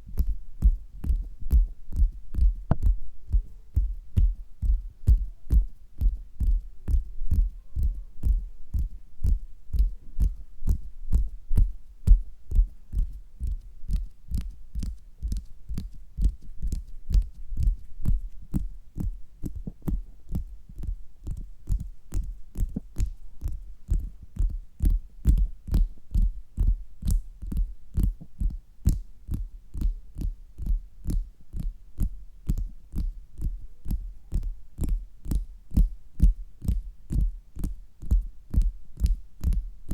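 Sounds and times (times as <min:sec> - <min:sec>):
fingers tapping on stomach: 0:00.2 - 0:39.9.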